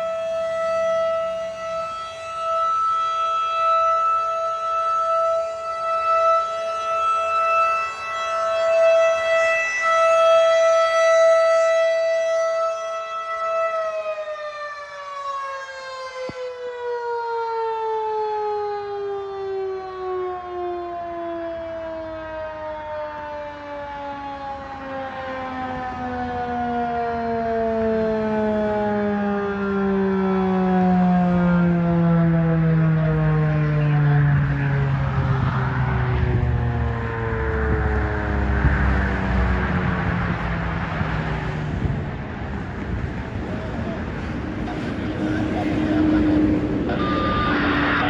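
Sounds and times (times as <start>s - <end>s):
rotating warning siren: 0.0s - 48.0s.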